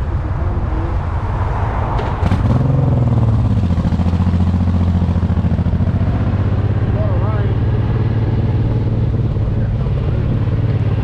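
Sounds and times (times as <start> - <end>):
motorcycle engine running: 2.3 - 11.0.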